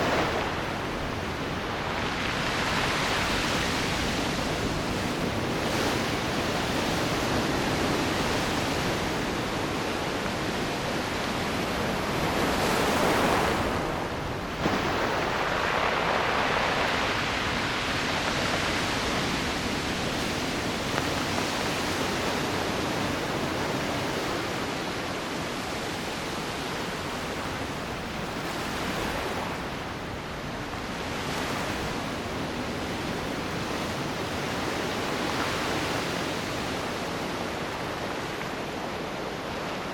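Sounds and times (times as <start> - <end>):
wave breaking: 0.0 - 9.8, 11.0 - 24.2
surf on rocky shore: 0.0 - 39.9.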